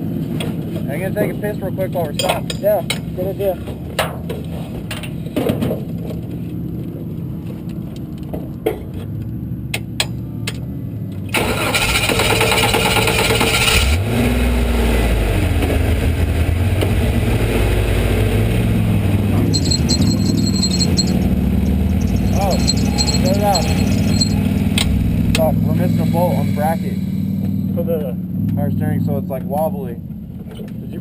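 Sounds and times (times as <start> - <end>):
engine starter cranking: 11.4 - 13.8.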